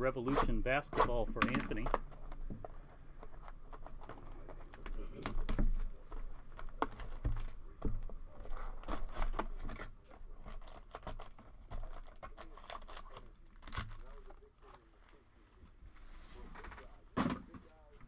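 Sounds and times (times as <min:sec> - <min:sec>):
packaging tearing and crinkling: 0:08.3 - 0:15.2.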